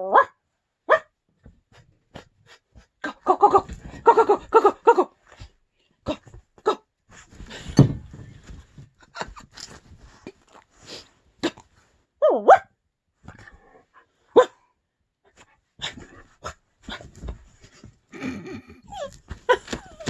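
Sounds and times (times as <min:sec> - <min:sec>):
scattered clicks and scuffs: 0:18.9 - 0:20.0.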